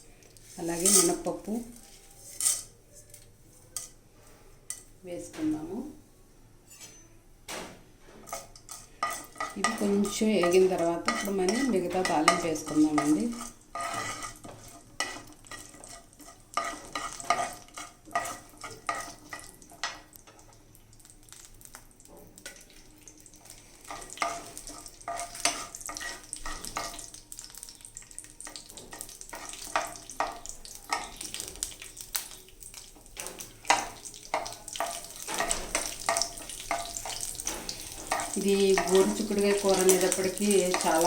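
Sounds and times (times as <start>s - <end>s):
lentils sizzling in oil: 0.0s - 4.0s, 8.3s - 41.0s
spatula scraping pan: 0.5s - 3.2s, 8.1s - 20.5s, 23.4s - 27.2s, 33.1s - 41.0s.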